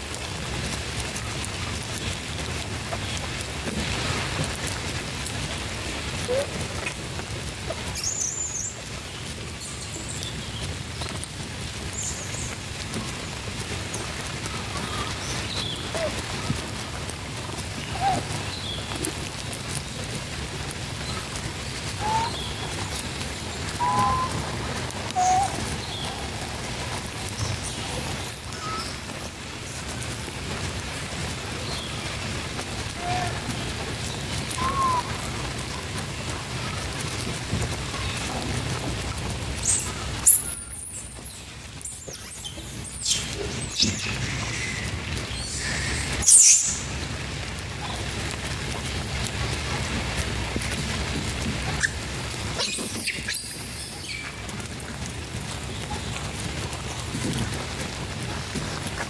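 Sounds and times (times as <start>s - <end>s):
low wind rumble: 0.0s - 59.0s
steady outdoor hiss: 0.0s - 59.0s
monkeys squeaking: 22.0s - 22.4s, 23.7s - 24.4s, 25.1s - 25.7s, 34.6s - 35.1s, 39.6s - 46.8s, 51.8s - 52.0s, 52.6s - 54.4s
chirping animal calls: 22.0s - 26.5s, 34.4s - 35.3s, 39.6s - 46.9s.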